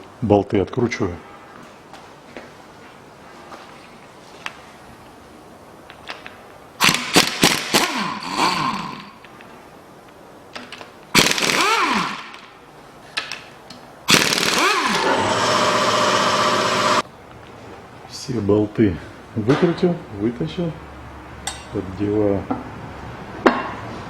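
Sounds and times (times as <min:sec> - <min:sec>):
power wrench motor whirring: 0:06.8 - 0:09.1, 0:11.2 - 0:12.5, 0:14.1 - 0:17.0.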